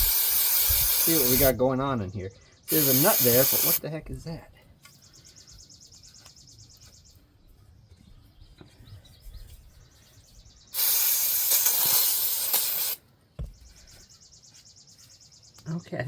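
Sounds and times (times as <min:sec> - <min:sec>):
aerosol can spraying hiss: 0:00.0 - 0:01.5, 0:02.7 - 0:03.8, 0:10.8 - 0:13.0.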